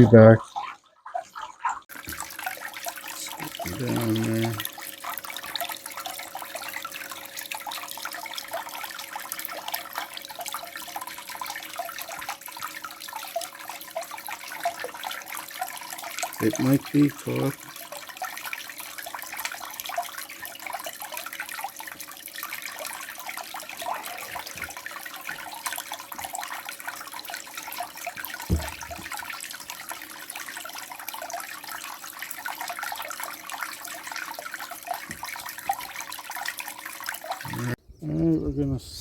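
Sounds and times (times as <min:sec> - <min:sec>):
water splashing and trickling: 0:00.0 - 0:39.0
dull knock: 0:28.5 - 0:29.1.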